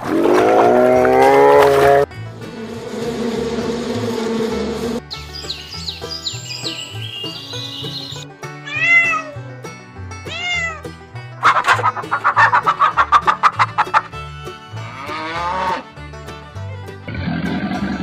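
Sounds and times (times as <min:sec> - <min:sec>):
background music: 0:00.5 - 0:18.0
cat meowing: 0:08.6 - 0:09.4, 0:10.3 - 0:10.9.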